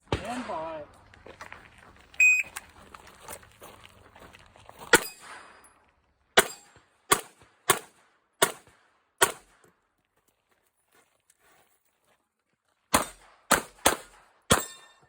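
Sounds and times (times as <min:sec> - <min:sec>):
pistol shots: 0:06.4 - 0:09.6, 0:12.9 - 0:15.0.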